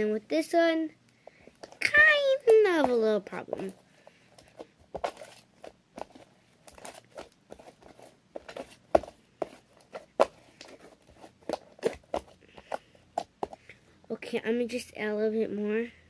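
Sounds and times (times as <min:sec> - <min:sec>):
slime squelching by hand: 0:01.6 - 0:13.8.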